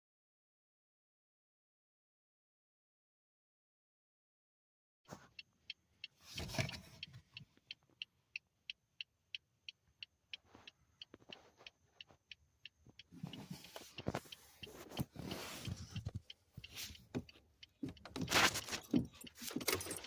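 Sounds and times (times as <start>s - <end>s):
dashboard warning ticking: 5.3s - 20.0s
short rustle: 18.2s - 20.0s.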